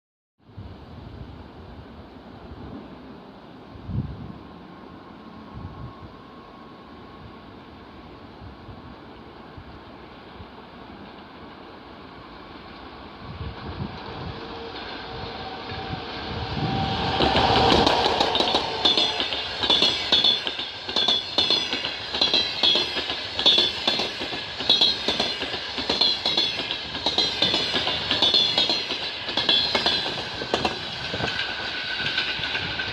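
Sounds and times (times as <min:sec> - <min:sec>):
passenger train passing: 0:00.5 - 0:32.9
wheels clacking over rail joints: 0:16.7 - 0:32.9.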